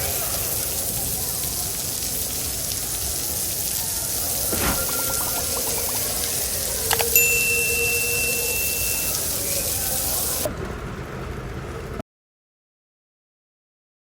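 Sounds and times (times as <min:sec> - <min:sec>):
light rain hissing: 0:00.0 - 0:10.5
running rainwater: 0:00.0 - 0:10.5
thin high tone: 0:04.5 - 0:10.5.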